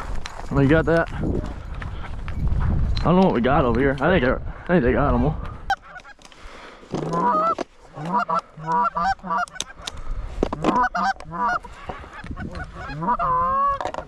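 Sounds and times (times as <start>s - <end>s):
canada goose honking: 7.1s - 9.9s, 10.6s - 14.0s.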